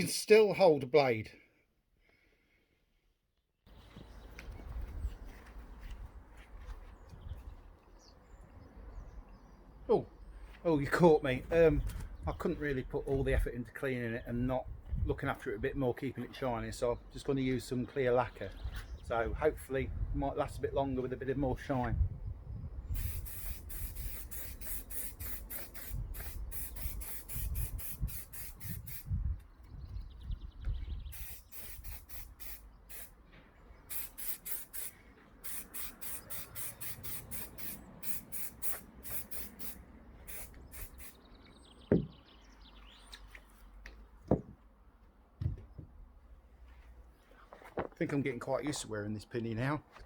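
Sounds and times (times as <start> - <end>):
aerosol can spraying: 23.0 - 29.1, 31.1 - 33.1, 33.9 - 41.2
sharp knocks: 41.9 - 42.2, 44.3 - 44.6.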